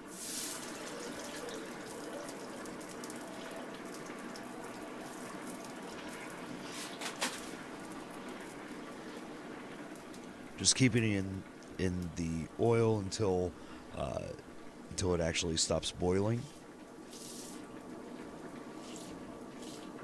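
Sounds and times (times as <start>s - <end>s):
oil bubbling and crackling: 0.0s - 10.6s, 16.6s - 20.0s.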